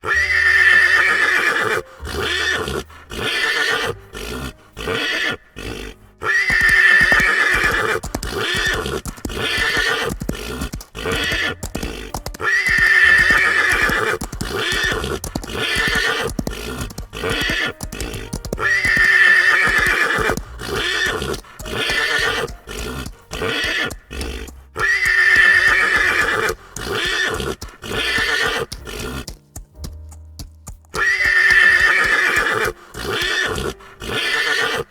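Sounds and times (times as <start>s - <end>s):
horse whinnying: 0.0s - 29.4s, 30.9s - 34.9s.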